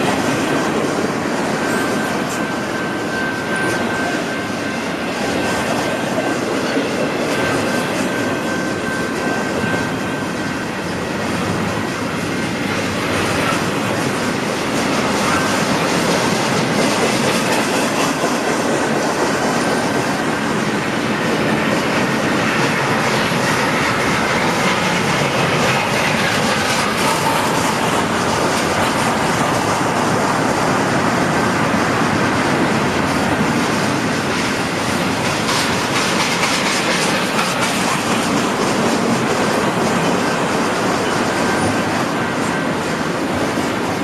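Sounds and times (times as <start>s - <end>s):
freight train wheels rumbling on rail: 0.0s - 44.0s
wheels clacking over rail joints: 0.0s - 44.0s
wheel squeal: 1.5s - 18.5s.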